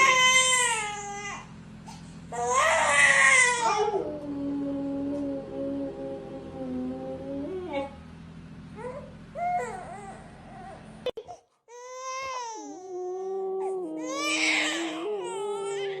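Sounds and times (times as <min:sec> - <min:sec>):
high-pitched crying wails: 0:00.0 - 0:01.4, 0:13.6 - 0:16.0
low hum: 0:00.0 - 0:11.2.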